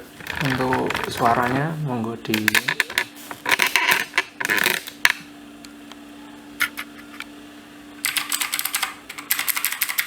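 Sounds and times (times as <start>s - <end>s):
mechanical keyboard typing: 0.2s - 1.6s, 2.3s - 5.2s, 8.0s - 10.0s.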